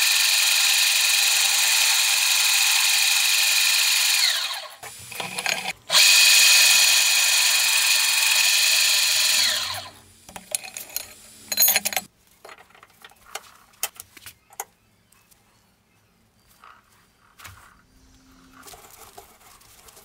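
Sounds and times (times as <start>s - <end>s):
power tool motor running: 0.0s - 10.0s
metal parts clicking and knocking: 4.8s - 5.8s, 10.3s - 14.7s.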